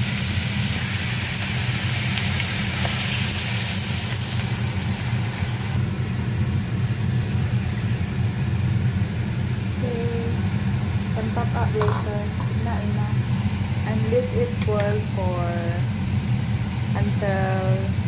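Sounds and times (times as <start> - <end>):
pan sizzling and hissing: 0.0 - 5.8
steady low hum: 0.0 - 18.0.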